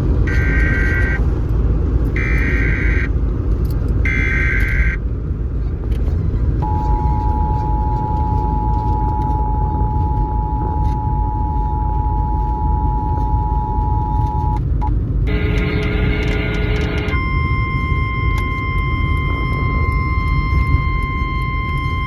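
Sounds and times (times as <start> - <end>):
low rumble of reception noise: 0.0 - 22.0
buzzing warble data bursts: 0.3 - 1.2, 4.1 - 5.0
steady two-tone attention signal: 6.6 - 14.6, 15.3 - 22.0.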